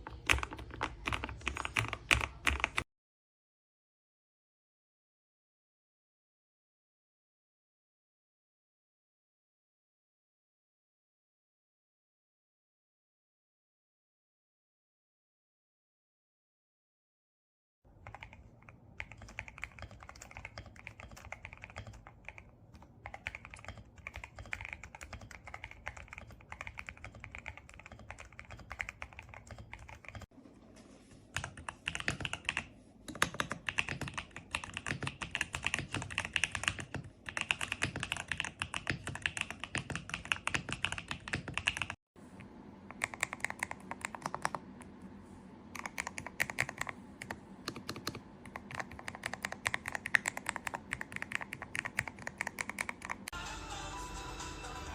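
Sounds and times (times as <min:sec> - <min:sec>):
mechanical keyboard typing: 0:00.0 - 0:02.8, 0:18.0 - 0:30.3, 0:31.4 - 0:42.0, 0:42.9 - 0:44.9, 0:45.7 - 0:53.4.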